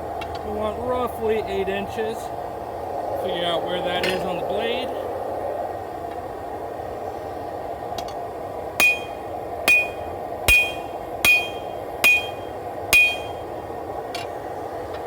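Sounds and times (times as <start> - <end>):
hammer blows on steel: 8.8 - 13.5.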